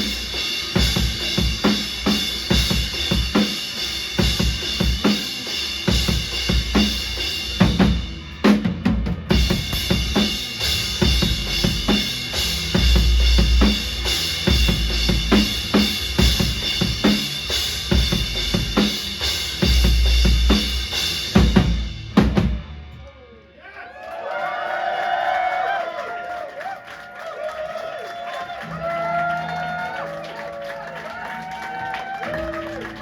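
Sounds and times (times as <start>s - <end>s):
live rock band playing: 0.0s - 23.0s, 28.6s - 33.0s
heavy deep bass: 5.7s - 23.3s.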